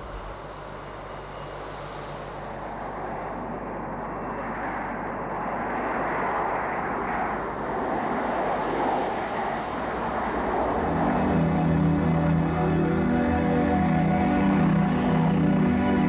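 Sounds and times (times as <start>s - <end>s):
music: 10.4s - 16.0s.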